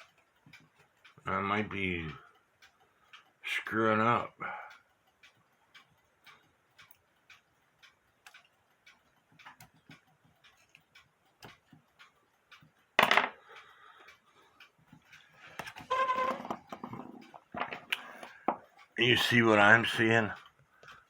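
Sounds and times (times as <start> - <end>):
clock ticking: 0.0 - 21.0.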